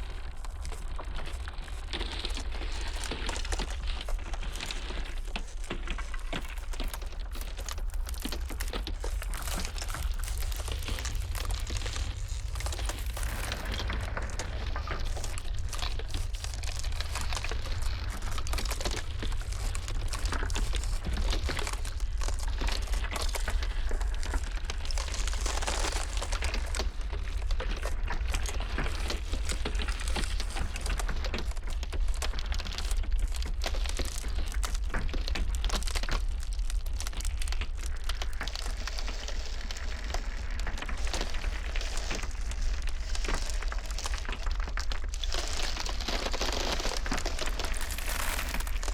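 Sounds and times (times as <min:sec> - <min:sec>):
ice cracking and crackling: 0:00.0 - 0:48.9
low rumble: 0:06.9 - 0:31.0, 0:39.6 - 0:48.9.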